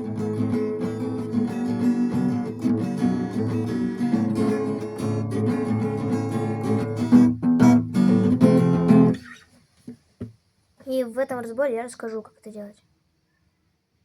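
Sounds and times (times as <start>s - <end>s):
acoustic guitar strumming: 0.0s - 9.4s.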